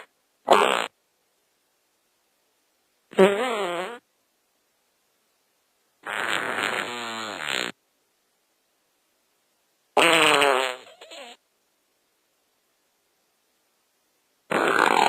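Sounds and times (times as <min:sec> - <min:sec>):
fart sounds: 0:00.0 - 0:01.0, 0:03.1 - 0:04.0, 0:06.0 - 0:07.8, 0:10.0 - 0:11.4, 0:14.5 - 0:15.0.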